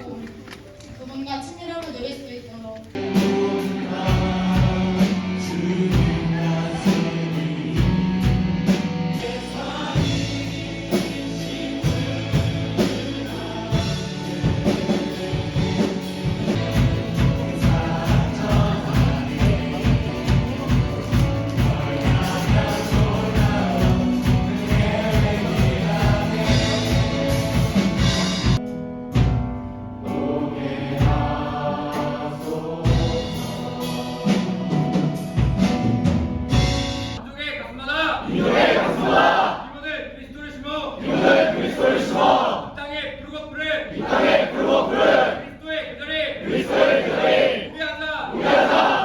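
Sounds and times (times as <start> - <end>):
group singing over instruments: 3.0 - 28.6, 30.0 - 35.3, 38.3 - 39.6, 41.0 - 42.7, 44.0 - 45.4, 46.4 - 47.7, 48.3 - 49.0
steady beat: 16.4 - 28.6.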